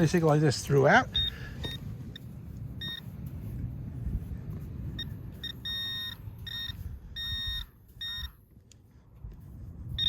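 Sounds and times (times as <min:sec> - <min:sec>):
low steady rumble: 0:00.0 - 0:10.0
metal detector beeping: 0:01.1 - 0:03.2, 0:04.9 - 0:08.5.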